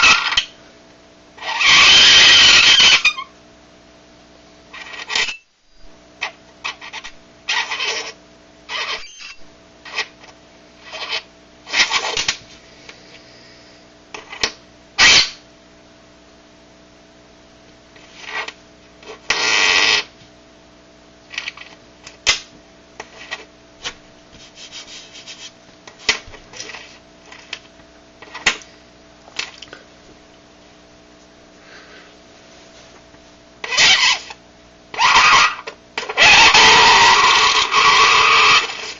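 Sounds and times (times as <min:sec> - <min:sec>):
coin squealing against dry ice: 0:00.0 - 0:00.5, 0:01.4 - 0:03.3, 0:04.8 - 0:05.4, 0:06.6 - 0:10.1, 0:10.8 - 0:12.2, 0:15.0 - 0:15.4, 0:19.3 - 0:20.1, 0:33.6 - 0:34.4, 0:35.0 - 0:38.9.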